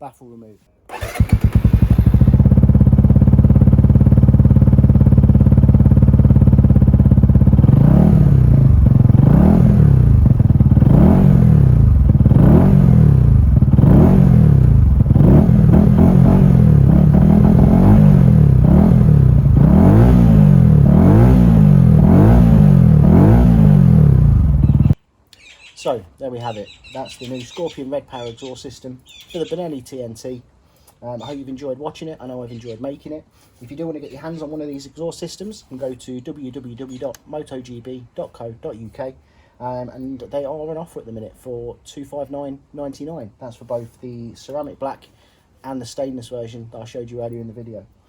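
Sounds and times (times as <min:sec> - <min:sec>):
motorcycle engine idling and revving: 0:00.9 - 0:25.0.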